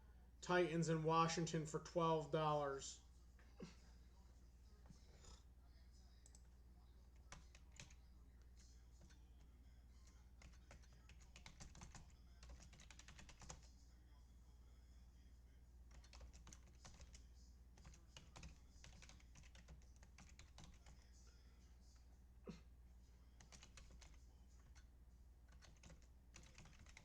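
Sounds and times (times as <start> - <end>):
computer keyboard typing: 7.2 - 8.0, 10.1 - 13.7, 15.9 - 21.0, 23.4 - 24.8, 25.5 - 27.0.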